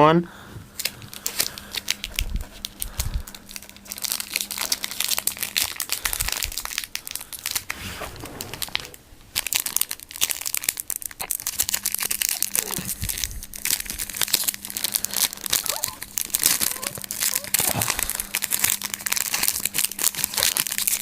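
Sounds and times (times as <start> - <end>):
foil wrapper crinkling and tearing: 0.8 - 21.0.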